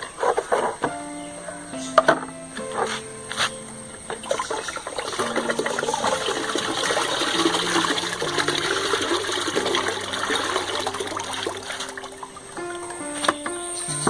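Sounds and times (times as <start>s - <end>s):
clay slurry splashing: 4.1s - 12.3s.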